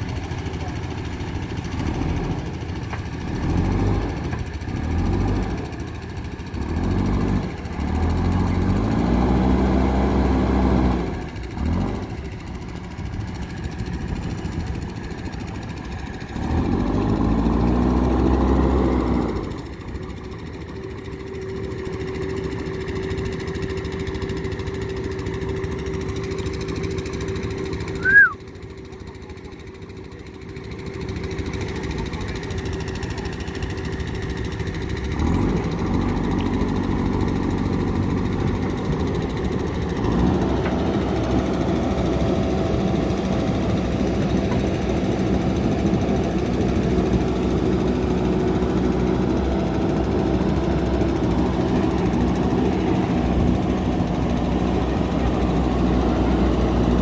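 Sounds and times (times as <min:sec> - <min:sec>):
diesel engine running: 0:00.0 - 0:57.0
loud chirp dropping in pitch: 0:28.0 - 0:28.4.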